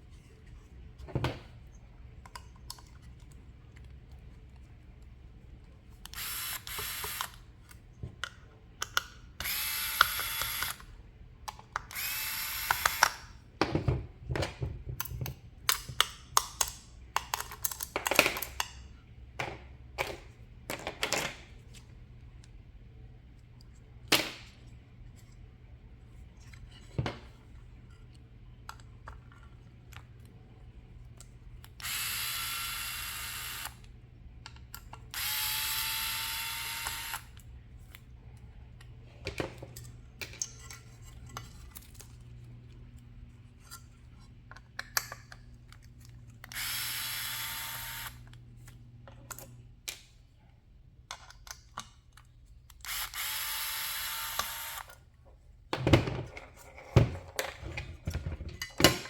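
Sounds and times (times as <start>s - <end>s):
electric screwdriver spinning: 6.1s - 7.4s, 9.4s - 10.8s, 11.9s - 13.2s, 31.8s - 33.8s, 35.2s - 37.4s, 46.4s - 48.2s, 52.8s - 54.9s
clicks and knocks of handled parts: 12.6s - 18.8s, 51.0s - 53.2s.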